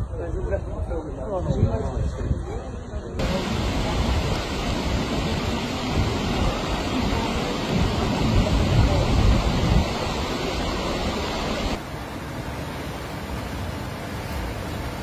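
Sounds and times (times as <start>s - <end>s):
flood water rushing: 3.2s - 15.0s.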